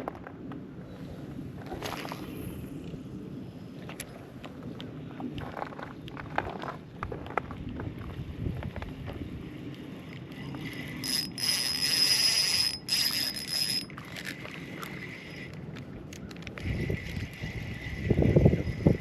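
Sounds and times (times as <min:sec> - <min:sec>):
fishing reel whirring: 0:10.4 - 0:15.7, 0:16.6 - 0:19.0.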